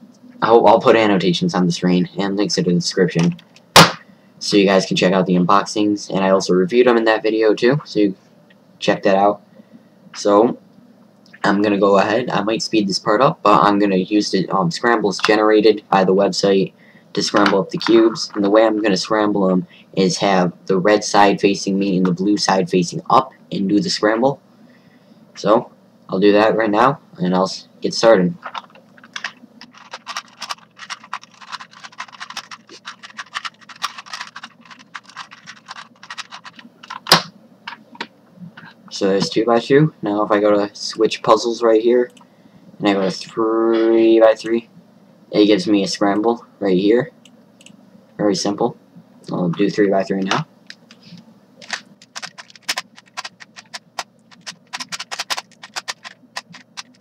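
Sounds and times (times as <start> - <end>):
puzzle cube clicking: 28.4 - 37.3, 51.6 - 57.0.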